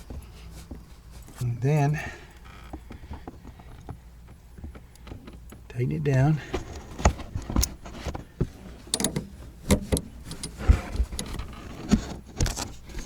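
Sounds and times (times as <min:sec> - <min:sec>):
wrench clicking and clanking: 0:08.9 - 0:10.6.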